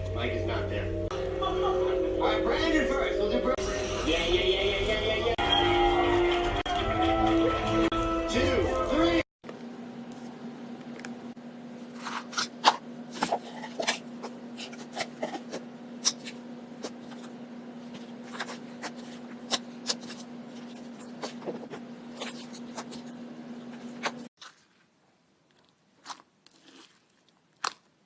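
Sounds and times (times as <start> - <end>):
low hum: 0.0 - 8.0.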